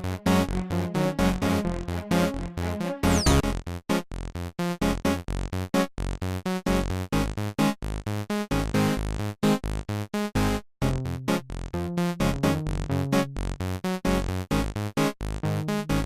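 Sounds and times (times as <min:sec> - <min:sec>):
upbeat electronic music: 0:00.0 - 0:03.5.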